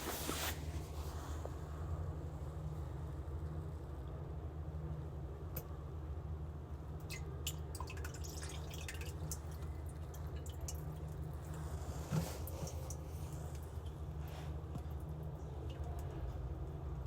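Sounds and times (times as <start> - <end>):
liquid dripping into toilet bowl: 7.0 - 11.8, 12.5 - 17.0.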